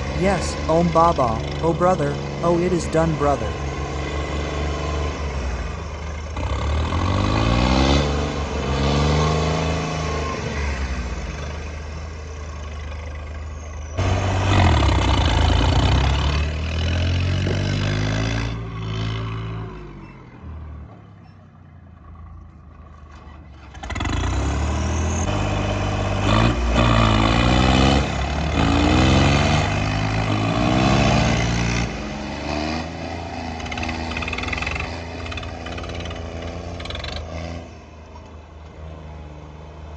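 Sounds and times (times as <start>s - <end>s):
tractor engines revving under load: 0.0s - 39.9s.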